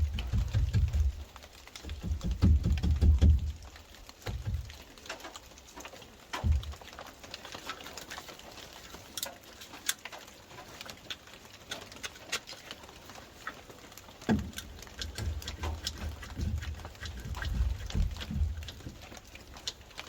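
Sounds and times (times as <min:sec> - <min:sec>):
dull low thuds: 0:00.0 - 0:04.8, 0:06.4 - 0:06.8, 0:14.3 - 0:19.1.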